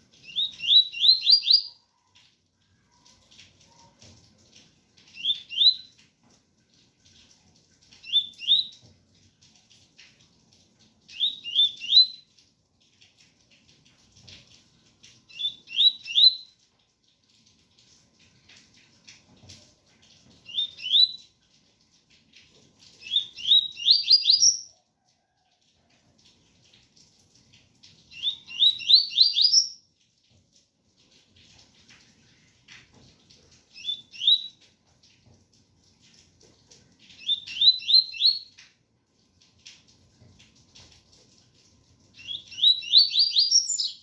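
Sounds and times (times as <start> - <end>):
bird singing whistled notes: 0.2 - 1.8, 5.2 - 5.9, 11.2 - 12.2, 15.3 - 16.5, 20.5 - 21.2, 23.0 - 24.7, 28.2 - 29.8, 33.8 - 34.6, 37.2 - 38.5, 42.2 - 44.0.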